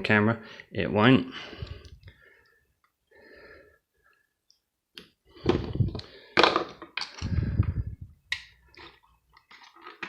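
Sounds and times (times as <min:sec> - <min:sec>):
plastic cracking and scraping: 0:08.3 - 0:10.0.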